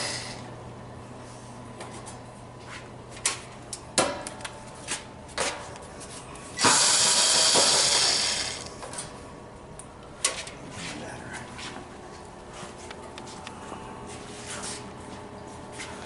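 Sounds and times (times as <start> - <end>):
power driver whirring: 0.0 - 0.4, 6.6 - 8.8.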